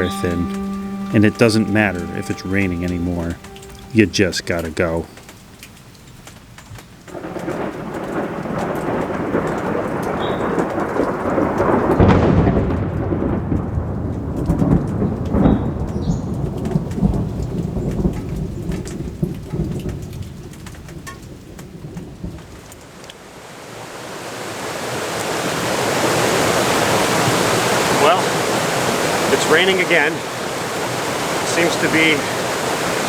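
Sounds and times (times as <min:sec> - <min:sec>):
steady rain: 0:00.0 - 0:33.0
thunder rumbling: 0:07.2 - 0:19.8.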